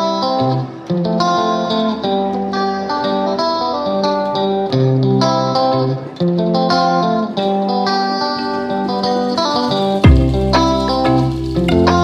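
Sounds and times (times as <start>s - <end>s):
plucked guitar melody: 0.0s - 12.0s
bass line: 10.0s - 12.0s.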